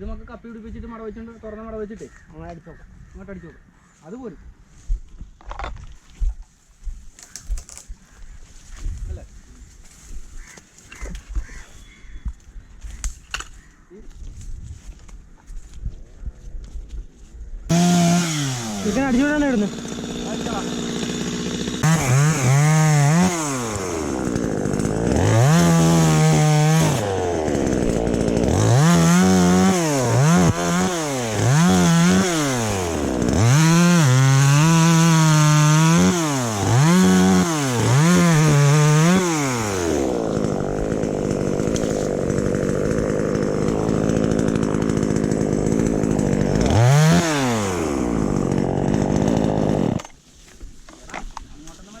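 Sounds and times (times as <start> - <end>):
chainsaw revving: 17.7 - 50.2.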